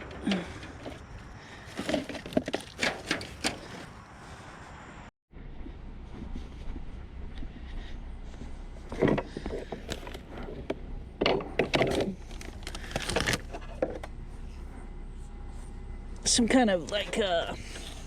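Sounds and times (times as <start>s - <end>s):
junk rattling and clattering: 0.0s - 4.1s, 8.4s - 18.0s
low steady hum: 4.2s - 18.0s.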